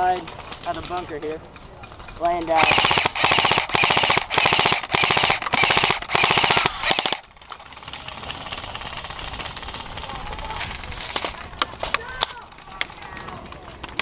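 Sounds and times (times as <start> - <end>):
steady background noise: 0.0 - 14.0
airsoft rifle full-auto bursts: 2.6 - 10.0.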